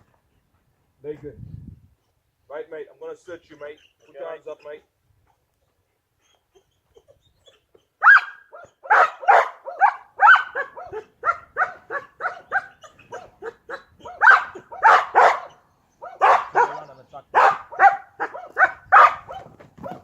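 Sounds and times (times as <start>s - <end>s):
dog barking rapidly: 8.0s - 20.0s.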